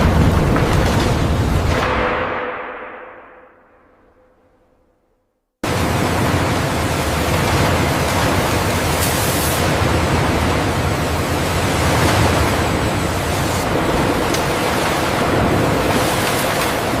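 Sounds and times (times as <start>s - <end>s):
loud steady rushing noise: 5.6s - 17.0s.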